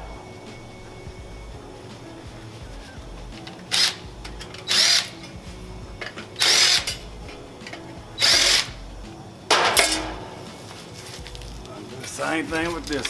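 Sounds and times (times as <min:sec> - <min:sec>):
cordless drill motor whining: 0:03.0 - 0:05.3, 0:06.4 - 0:07.1, 0:08.2 - 0:08.9.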